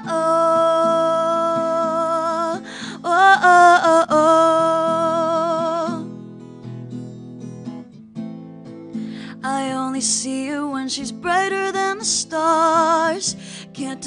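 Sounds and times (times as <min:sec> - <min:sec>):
woman singing: 0:00.0 - 0:06.2, 0:09.2 - 0:14.0
strummed guitar: 0:00.0 - 0:14.0.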